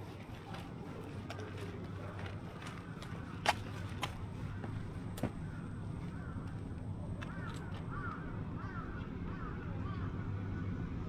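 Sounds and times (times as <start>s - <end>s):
crow cawing: 7.3s - 9.5s.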